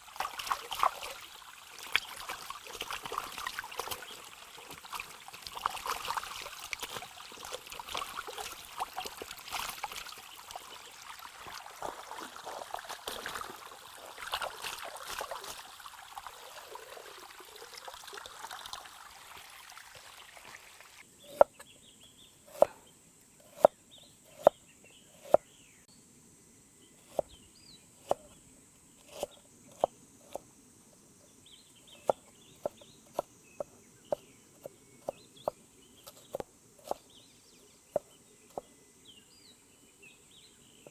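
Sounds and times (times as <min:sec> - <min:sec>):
water splashing: 0:00.0 - 0:21.0.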